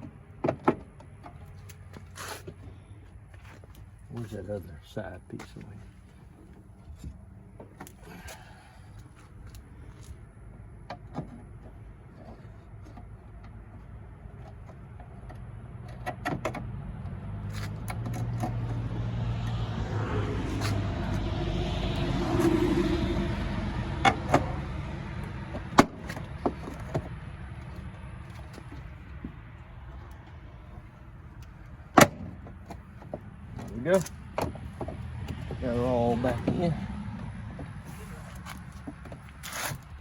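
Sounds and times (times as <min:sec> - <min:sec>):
vehicle passing by: 0:16.6 - 0:40.0.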